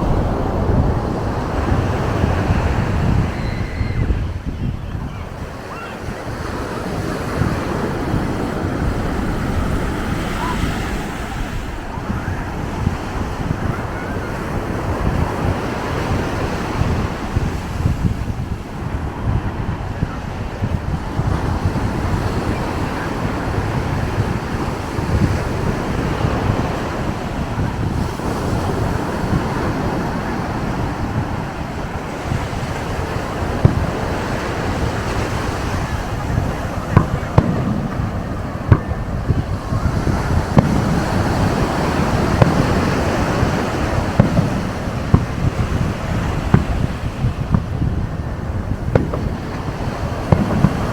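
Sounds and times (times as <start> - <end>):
ocean surf washing on beach: 0.0 - 50.9
wind buffeting microphone: 0.0 - 50.9
sharp pop: 50.3 - 50.9.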